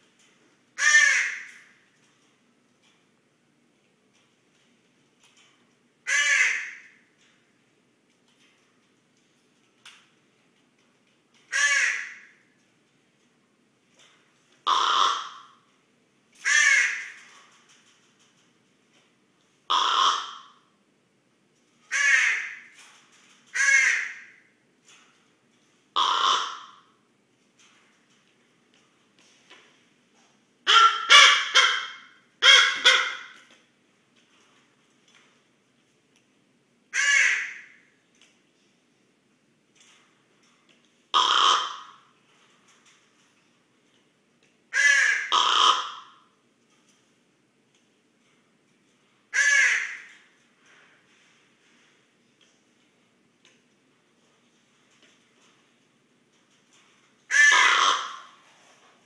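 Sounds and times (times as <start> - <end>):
raven calling: 0.8 - 1.8, 6.0 - 7.1, 11.5 - 12.6, 14.6 - 15.7, 16.4 - 17.6, 19.7 - 20.7, 21.9 - 22.8, 23.5 - 24.6, 25.9 - 27.0, 30.6 - 33.5, 36.9 - 38.0, 41.1 - 42.2, 44.7 - 46.4, 49.3 - 50.4, 57.3 - 58.5.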